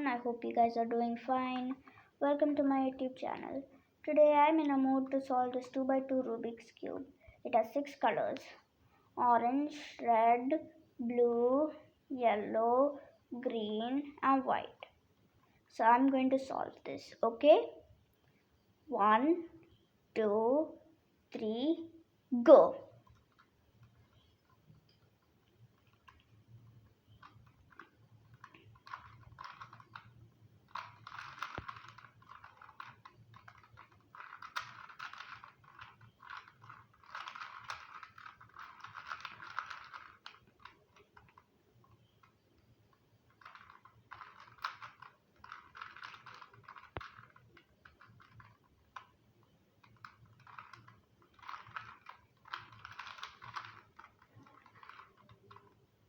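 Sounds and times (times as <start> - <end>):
puzzle cube plastic pieces clicking: 22.8 - 55.9.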